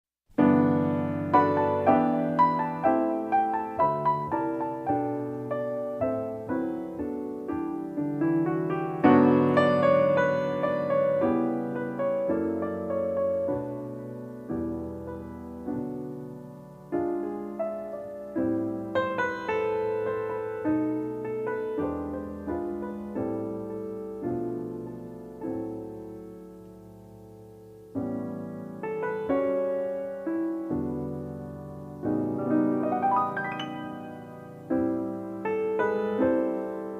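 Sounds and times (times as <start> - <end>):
slow jazz piano: 0.3 - 36.9.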